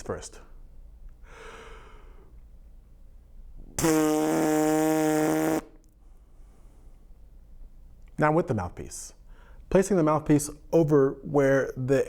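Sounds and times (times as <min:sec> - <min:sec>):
breath in: 0:01.2 - 0:02.4
low lip buzz: 0:03.6 - 0:05.9.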